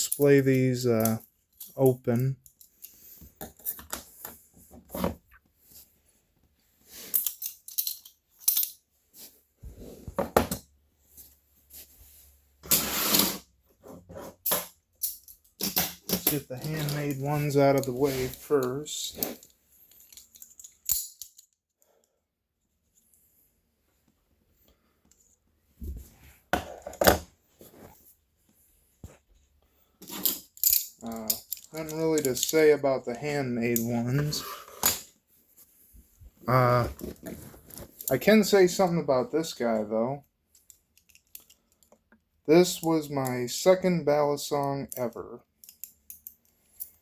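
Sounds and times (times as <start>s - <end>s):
knives knocking and clacking: 7.1s - 8.8s
knives being set down: 10.1s - 10.7s.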